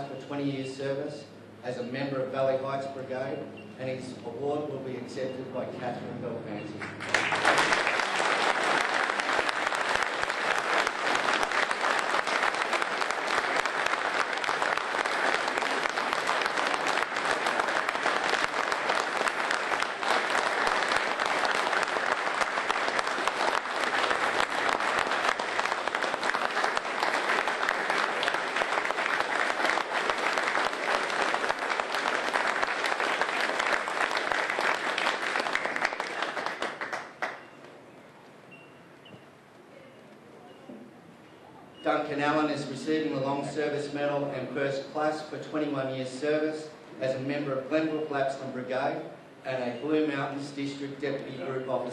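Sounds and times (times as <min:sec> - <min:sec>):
audience applauding: 0:06.8 - 0:37.5.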